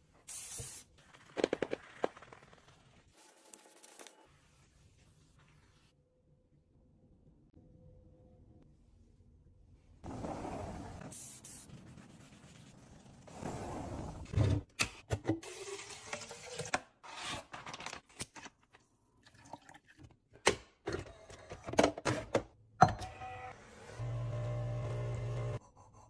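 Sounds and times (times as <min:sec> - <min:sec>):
liquid pouring into container: 0:19.2 - 0:20.0.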